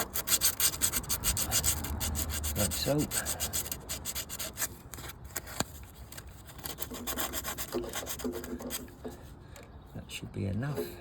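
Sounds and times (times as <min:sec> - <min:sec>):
scrubbing strokes on cable connector: 0:00.0 - 0:04.7.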